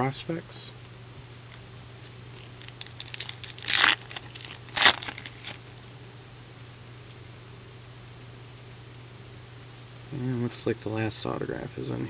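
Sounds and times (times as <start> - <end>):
wrapper crinkling and tearing: 2.0 - 5.6.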